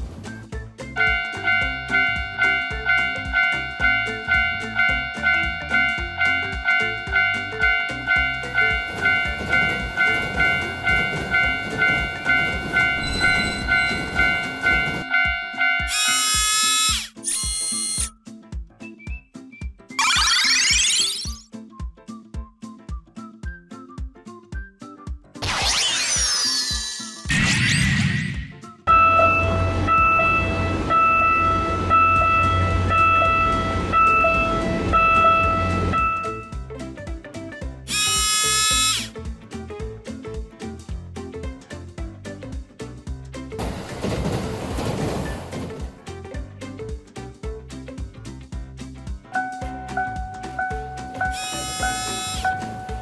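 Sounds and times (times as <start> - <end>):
passing train: 1.0 - 16.9, 28.9 - 36.5, 43.6 - 46.2
railroad crossing bell ringing: 1.0 - 16.9, 28.9 - 36.5.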